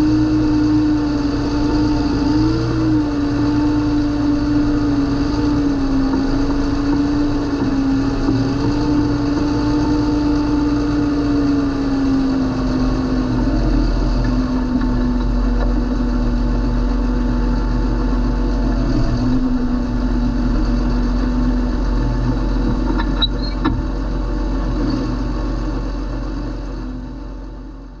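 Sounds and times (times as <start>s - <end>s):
tractor diesel engine running: 0.0s - 28.0s.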